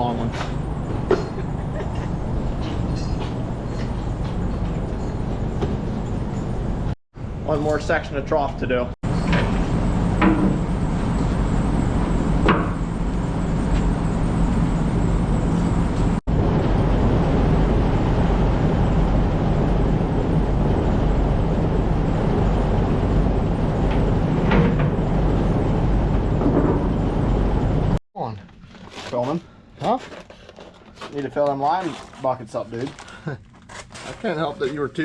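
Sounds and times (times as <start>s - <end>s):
engine running with deep hum: 0.0s - 7.4s, 9.1s - 28.0s.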